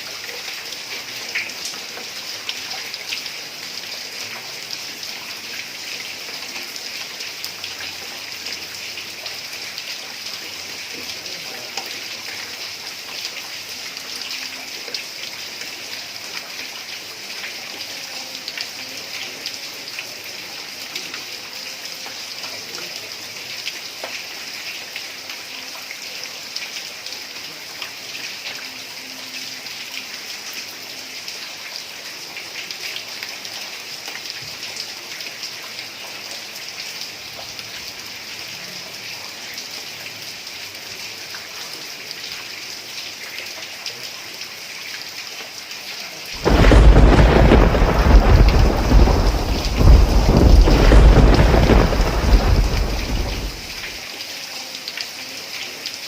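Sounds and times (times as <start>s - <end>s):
heavy rain on a tiled roof: 0.0s - 56.0s
thunder clap and rumble: 46.4s - 54.0s.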